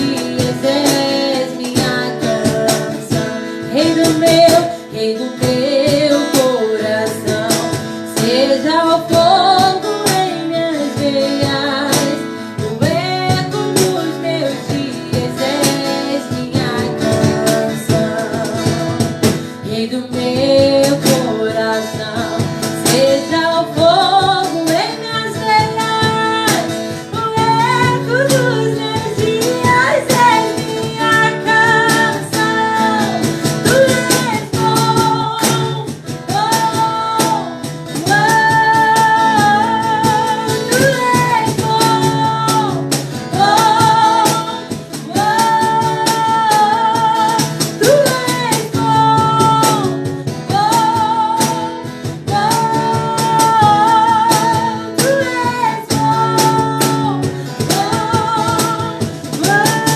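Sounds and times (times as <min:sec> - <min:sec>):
person singing: 0:00.0 - 0:59.9
strummed acoustic guitar: 0:00.0 - 0:59.9.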